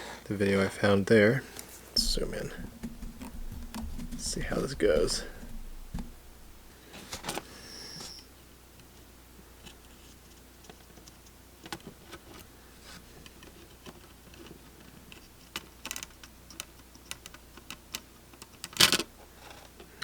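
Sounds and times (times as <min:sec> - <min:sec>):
low steady hum: 0:01.2 - 0:06.9
high-pitched hiss: 0:02.0 - 0:02.8, 0:07.5 - 0:08.3.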